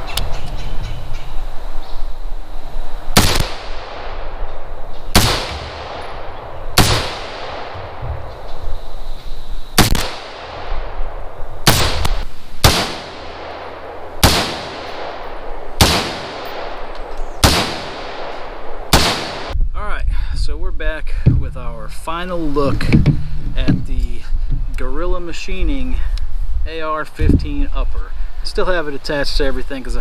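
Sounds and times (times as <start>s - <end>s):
rifle shots with echo: 3.1s - 8.8s, 9.8s - 19.6s.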